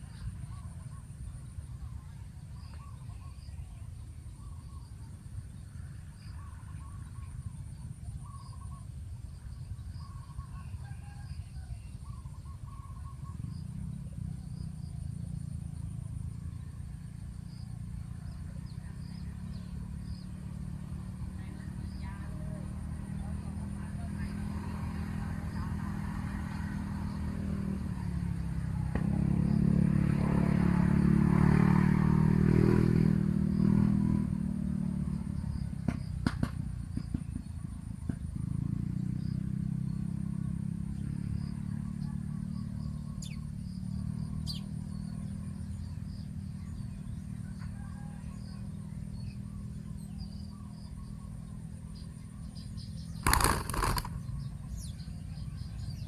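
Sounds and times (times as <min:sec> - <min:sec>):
sharp clicks: 0:53.2 - 0:54.2.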